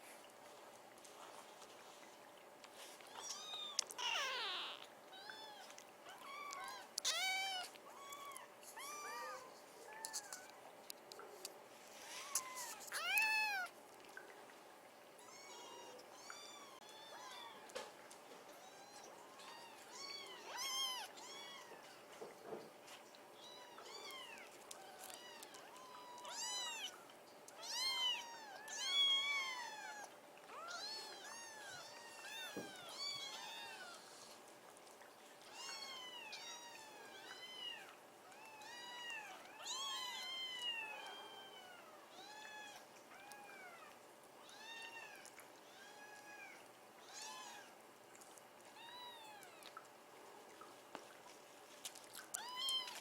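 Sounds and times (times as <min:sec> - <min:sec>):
kittens meowing: 0:03.2 - 0:10.6, 0:12.2 - 0:13.7.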